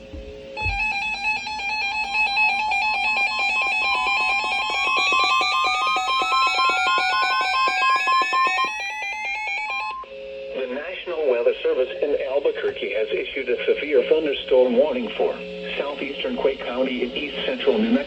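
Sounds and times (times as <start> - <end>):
rising alarm tone: 0.6 - 10.1
warbling high alarm beeps: 0.6 - 10.1.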